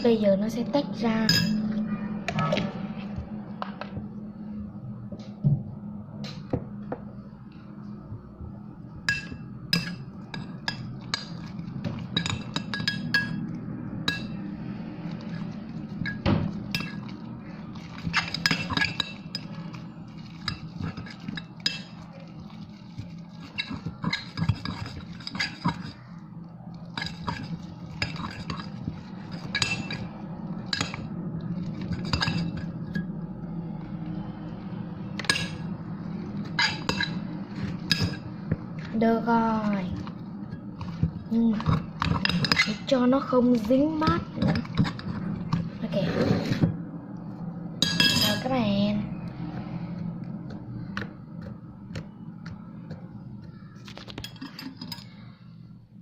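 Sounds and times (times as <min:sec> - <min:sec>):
steady low hum: 0:00.0 - 0:56.0
utensil clinking against bowl: 0:09.1 - 0:14.4, 0:15.1 - 0:26.1, 0:26.8 - 0:33.1, 0:36.4 - 0:38.3, 0:39.6 - 0:45.8, 0:47.8 - 0:48.5.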